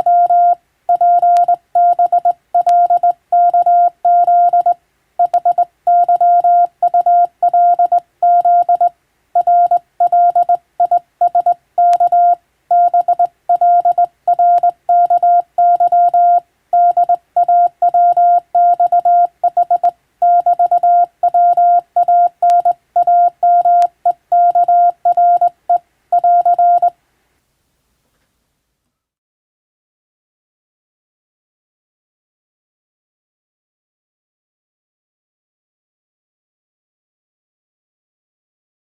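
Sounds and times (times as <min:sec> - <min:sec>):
morse code tone beeping: 0:00.0 - 0:26.9.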